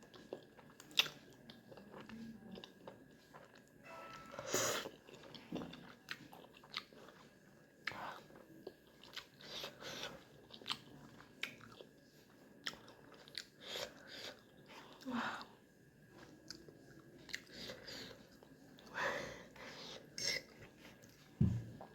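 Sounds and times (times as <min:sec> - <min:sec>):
chewing and biting food: 0:00.0 - 0:03.8, 0:04.8 - 0:15.0, 0:16.2 - 0:18.9.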